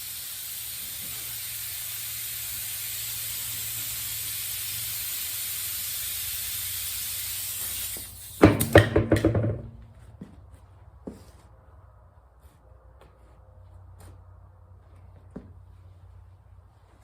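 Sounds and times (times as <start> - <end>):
compressed air hissing: 0.0 - 8.9
rapid pneumatic hammering: 0.0 - 9.6.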